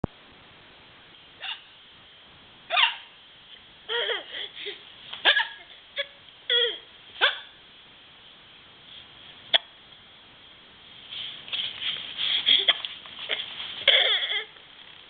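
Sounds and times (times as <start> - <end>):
squeaky hiccups: 1.4 - 1.7, 2.7 - 3.1, 5.2 - 7.6, 9.5 - 9.8, 13.3 - 14.5.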